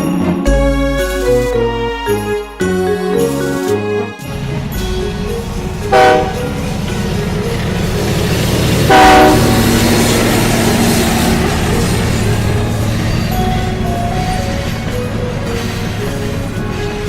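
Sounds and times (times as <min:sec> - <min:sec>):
train running: 0:00.0 - 0:17.0
train horn blasts: 0:05.8 - 0:06.6, 0:08.8 - 0:09.9.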